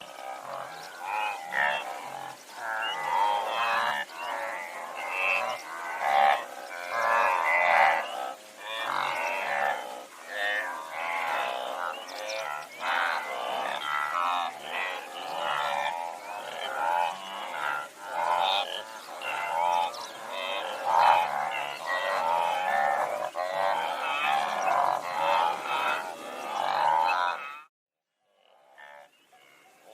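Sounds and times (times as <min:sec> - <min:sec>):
wildebeest grunting calls: 0:00.0 - 0:27.7, 0:28.5 - 0:29.9.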